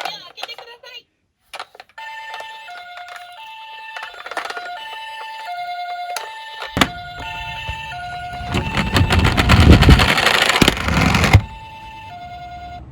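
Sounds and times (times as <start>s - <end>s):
toy car rolling rumble: 1.6s - 5.4s, 6.1s - 11.6s
toy two-tone siren: 1.8s - 12.9s.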